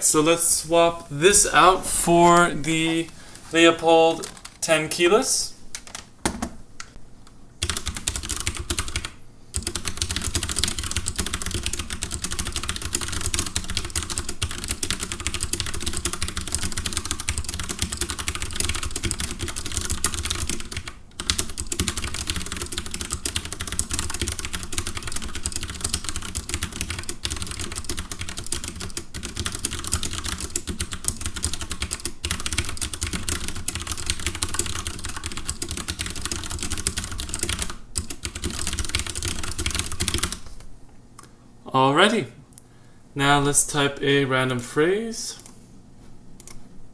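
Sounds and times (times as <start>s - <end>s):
mechanical keyboard typing: 7.6s - 40.4s.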